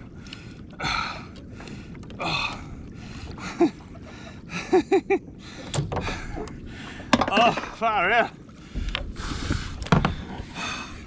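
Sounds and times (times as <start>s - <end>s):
man breathing heavily: 8.6s - 11.0s.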